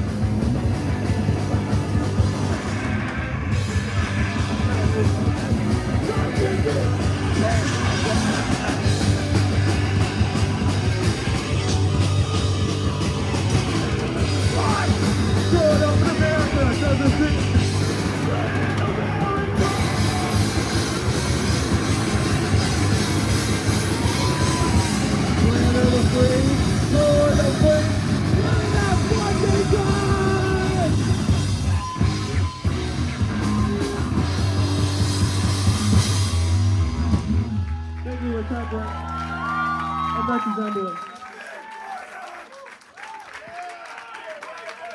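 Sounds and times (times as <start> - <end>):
live rock band: 0.0 - 37.9
person singing: 14.4 - 20.7, 24.8 - 31.0.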